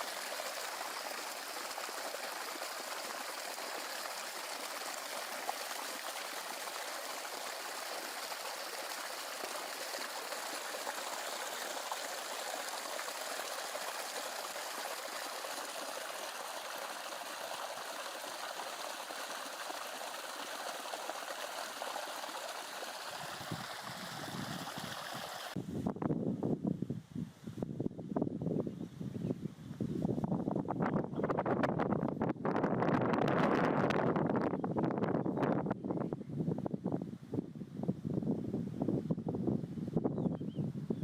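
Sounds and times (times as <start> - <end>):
stream water rushing: 0.0 - 25.6.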